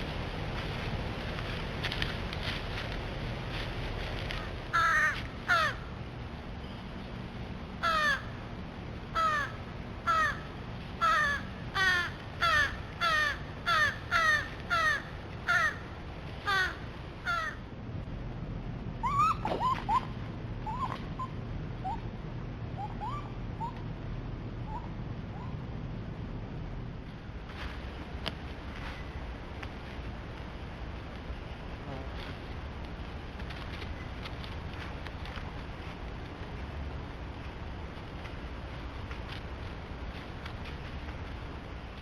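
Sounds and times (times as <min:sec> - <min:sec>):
crows cawing: 0:04.7 - 0:06.0, 0:07.8 - 0:08.4, 0:09.2 - 0:17.7.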